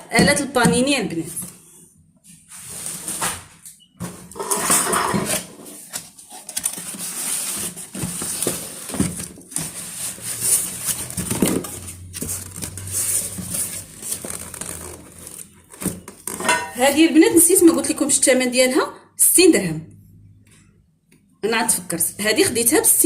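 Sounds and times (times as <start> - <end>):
rustling: 4.4 - 16.1
kitchenware knocks and clinks: 16.4 - 16.8.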